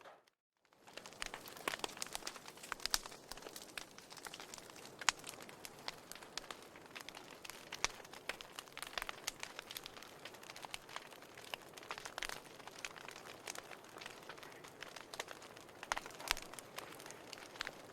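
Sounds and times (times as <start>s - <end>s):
wood fire crackling: 0.0s - 17.9s.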